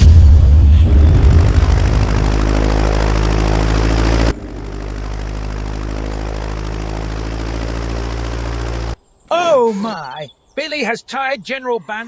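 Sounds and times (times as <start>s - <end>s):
cartoon bee swarm buzzing: 0.9s - 9.0s.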